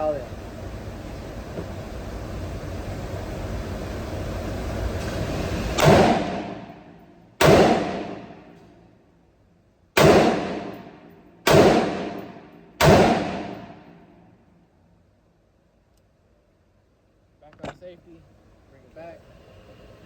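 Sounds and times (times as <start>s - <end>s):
gunshots: 5.8s - 6.7s, 7.4s - 8.4s, 10.0s - 13.9s.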